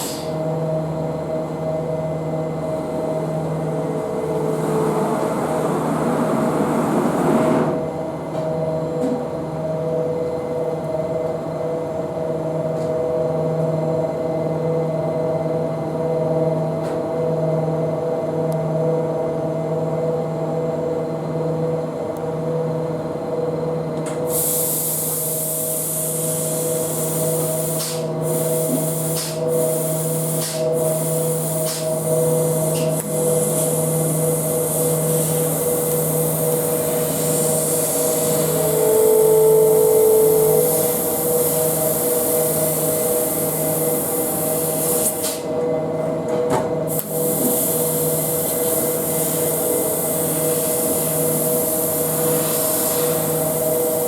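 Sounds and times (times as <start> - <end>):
laser cutting machine hum: 0.0 - 54.0
short steady tone: 36.6 - 42.7.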